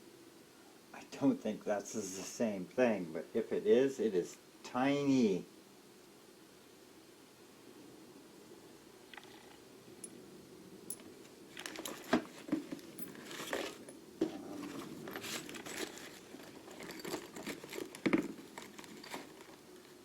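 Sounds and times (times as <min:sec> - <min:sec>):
wrapping crinkling and rustling: 0:11.5 - 0:13.9, 0:14.6 - 0:20.0.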